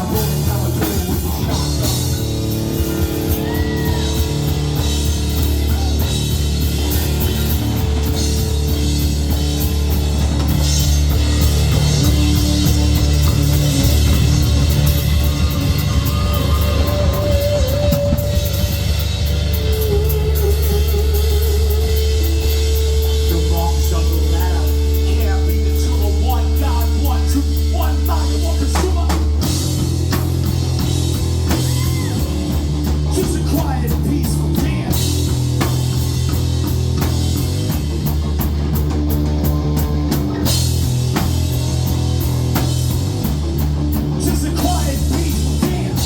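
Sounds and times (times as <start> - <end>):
drum kit beat: 0.0 - 46.0
live band playing loudly: 0.0 - 46.0
wavering held lead note: 11.1 - 27.2.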